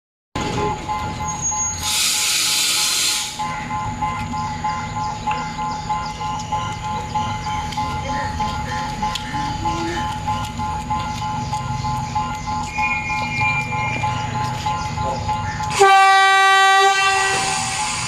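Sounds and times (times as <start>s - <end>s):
diesel train engine rumbling: 0.4s - 18.0s
rapid electronic beeping: 0.5s - 15.7s
loud air hiss: 1.8s - 3.4s, 17.2s - 18.0s.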